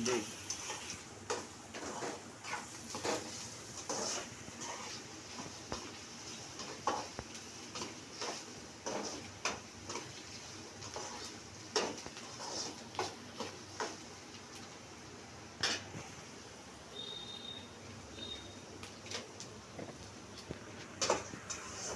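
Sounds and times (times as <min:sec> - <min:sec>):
onions frying in a pan: 0:00.0 - 0:21.9
utensil scraping a pan: 0:00.5 - 0:06.0, 0:07.8 - 0:14.0, 0:21.0 - 0:21.9.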